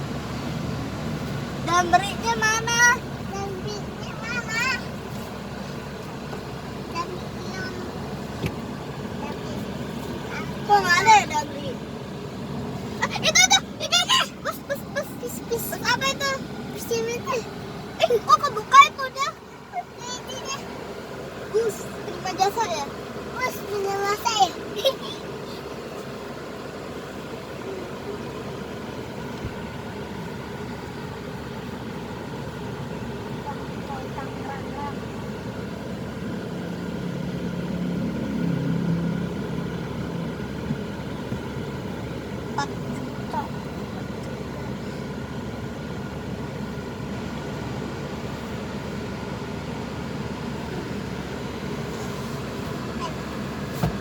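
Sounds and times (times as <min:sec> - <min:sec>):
highway traffic rumble: 0:00.0 - 0:54.0
low engine hum: 0:00.0 - 0:54.0
road noise rushing: 0:00.0 - 0:54.0.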